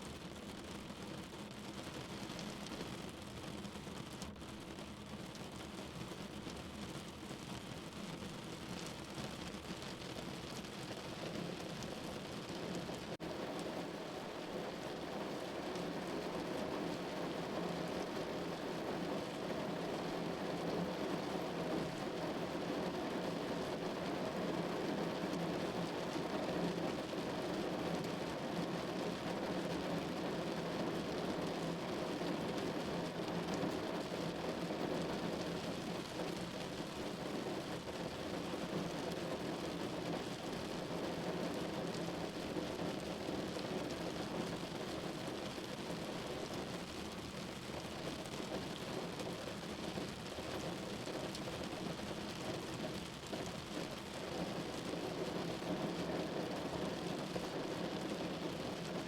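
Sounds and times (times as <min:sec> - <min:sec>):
steady rain: 0:00.0 - 0:59.0.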